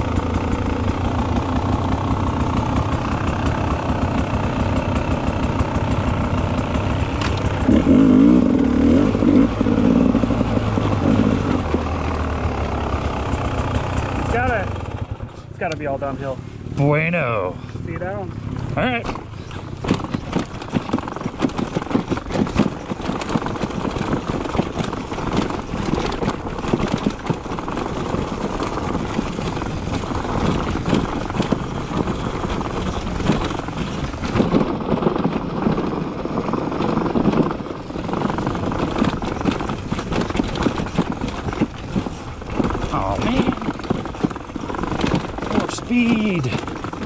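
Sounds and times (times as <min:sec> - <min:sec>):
motorcycle engine revving: 0:00.0 - 0:47.0
bike clattering over rocks: 0:18.8 - 0:47.0.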